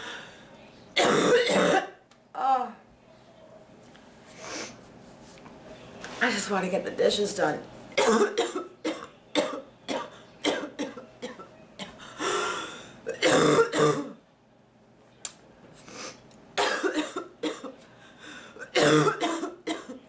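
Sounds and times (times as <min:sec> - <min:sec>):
woman coughing: 0:01.0 - 0:02.0, 0:08.0 - 0:12.0, 0:13.1 - 0:14.2, 0:16.6 - 0:17.8, 0:18.6 - 0:20.0.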